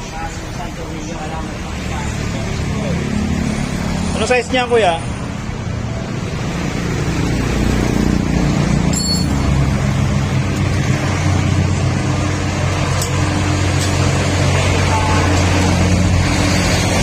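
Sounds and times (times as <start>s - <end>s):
light metallic clink: 8.9s - 9.5s.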